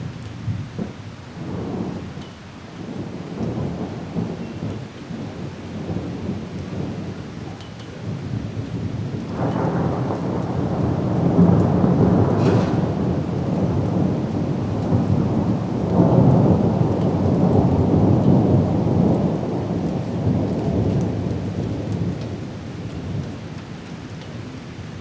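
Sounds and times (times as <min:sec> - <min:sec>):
steady rain: 0:00.0 - 0:25.0
raindrop ticks: 0:01.8 - 0:02.4, 0:06.5 - 0:08.2, 0:09.2 - 0:10.6, 0:19.0 - 0:24.4
thunder rumbling: 0:02.9 - 0:22.4.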